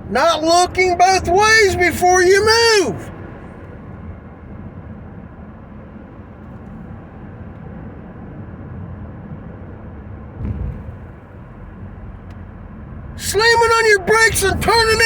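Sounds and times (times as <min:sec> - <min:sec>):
road and engine rumble in car: 0:00.0 - 0:15.0
low thump: 0:10.4 - 0:12.5.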